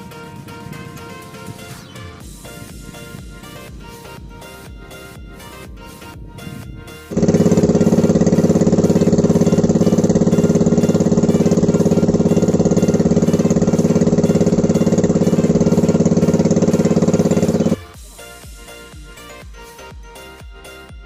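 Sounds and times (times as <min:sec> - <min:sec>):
boat engine running: 0:06.2 - 0:18.0.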